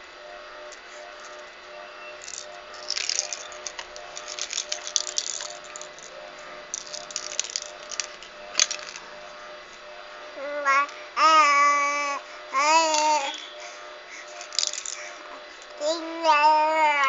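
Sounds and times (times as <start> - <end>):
small hard objects rattling: 2.2 - 6.1, 6.7 - 9.0, 14.4 - 15.1.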